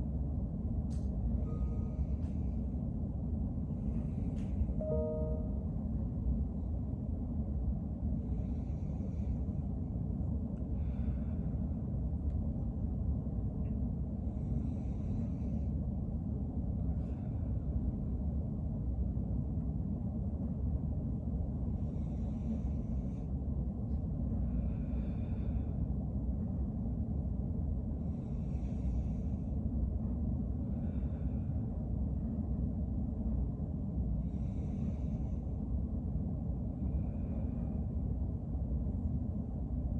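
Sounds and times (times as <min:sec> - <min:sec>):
steady low rumble: 0:00.0 - 0:39.9
person breathing deeply: 0:08.2 - 0:09.8, 0:10.7 - 0:11.8, 0:14.2 - 0:15.8, 0:24.3 - 0:26.0, 0:28.0 - 0:29.6, 0:30.6 - 0:32.2, 0:34.2 - 0:35.8.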